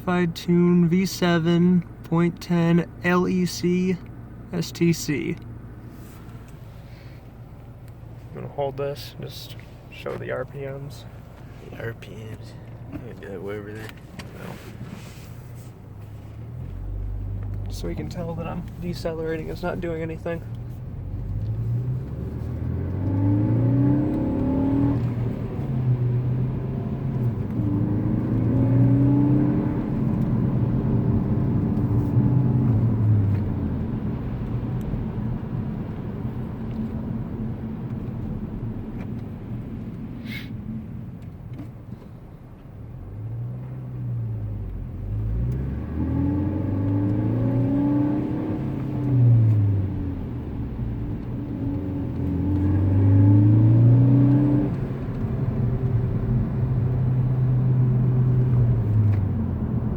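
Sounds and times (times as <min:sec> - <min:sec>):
car engine revving: 0:08.4 - 0:39.0, 0:43.0 - 0:59.9.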